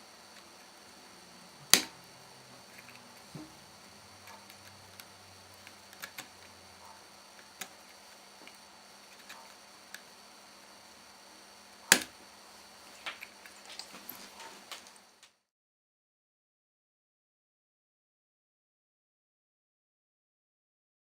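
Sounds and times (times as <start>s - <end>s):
clicks of laptop parts and tools: 1.7s - 2.0s.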